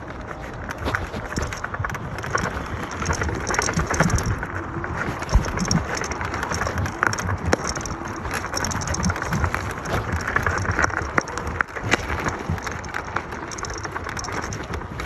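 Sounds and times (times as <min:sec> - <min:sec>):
scooter knocks and rattles: 0:00.0 - 0:15.0
wind and tyre noise: 0:00.0 - 0:15.0.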